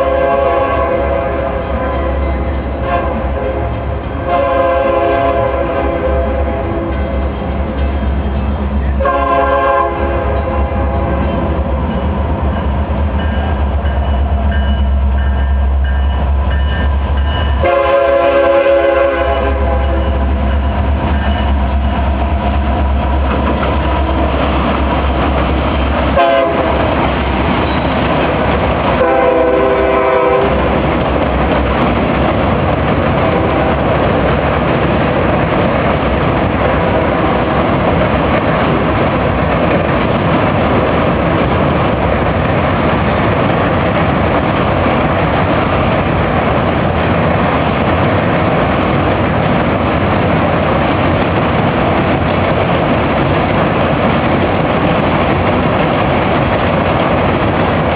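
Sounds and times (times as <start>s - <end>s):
train horn blasts: 0.0s - 7.1s, 9.0s - 11.3s, 17.6s - 20.3s, 26.2s - 26.9s, 29.0s - 30.8s, 33.2s - 33.8s
train rumbling and clattering: 0.0s - 57.9s.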